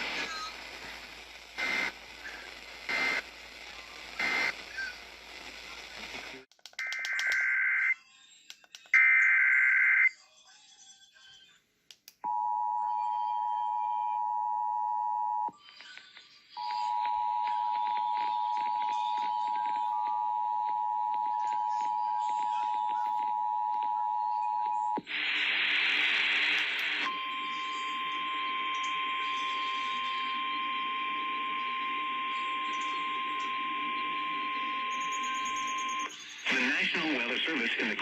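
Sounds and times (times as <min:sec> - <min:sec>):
radio static: 0:00.0 - 0:08.0, 0:15.4 - 0:38.0
screeching digital data bursts: 0:34.8 - 0:36.4.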